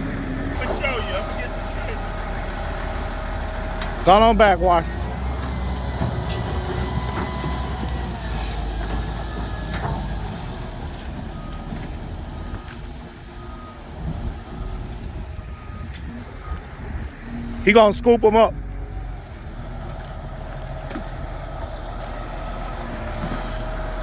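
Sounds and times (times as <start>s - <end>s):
heavy vehicle engine running: 0.0s - 24.0s
reversing alarm beeping: 0.5s - 19.0s.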